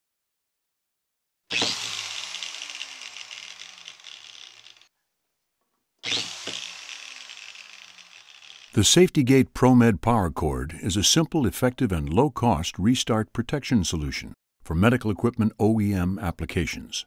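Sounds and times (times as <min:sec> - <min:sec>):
electric power tool motor: 0:01.5 - 0:04.9, 0:06.0 - 0:08.8.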